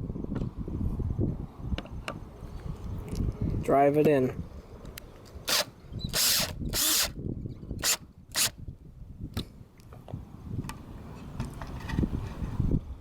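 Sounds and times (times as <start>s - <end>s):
screw scraping into wood: 5.5s - 7.1s.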